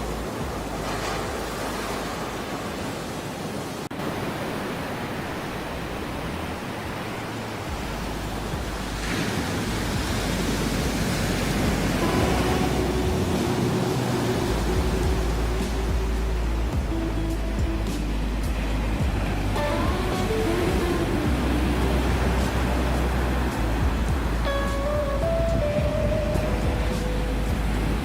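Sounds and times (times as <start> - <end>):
waves washing on shore: 0.0 - 28.0
soft music with held tones: 7.7 - 28.0.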